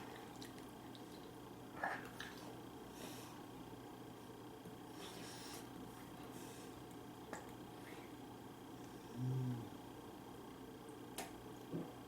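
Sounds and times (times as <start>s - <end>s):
soft squishy chewing: 0.0s - 2.6s
steady low hum: 0.0s - 12.0s.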